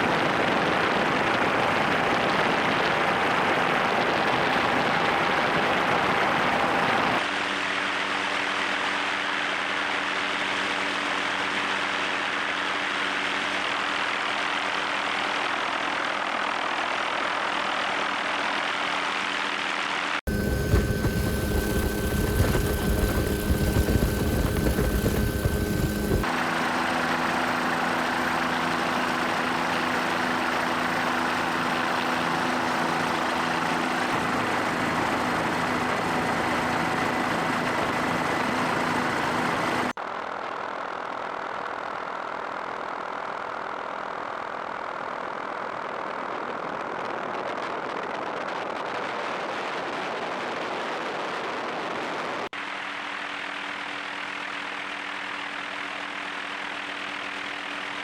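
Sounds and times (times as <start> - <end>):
helicopter engine and rotor: 0.0 - 16.2, 20.3 - 40.0.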